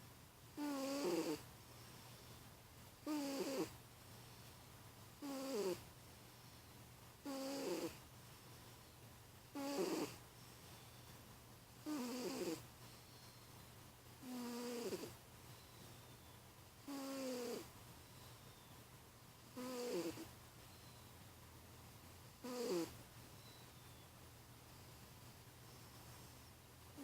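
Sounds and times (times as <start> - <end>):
snoring: 0.6 - 1.4, 3.0 - 3.8, 5.2 - 5.8, 7.2 - 8.0, 9.6 - 10.2, 11.8 - 12.6, 14.2 - 15.2, 16.9 - 17.7, 19.6 - 20.3, 22.4 - 23.0.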